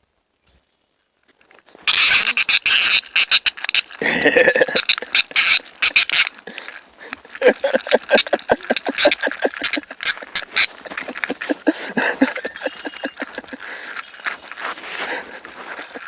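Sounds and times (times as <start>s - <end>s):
fishing reel ratcheting clicks: 1.9s - 4.0s, 4.8s - 6.3s, 7.8s - 10.7s.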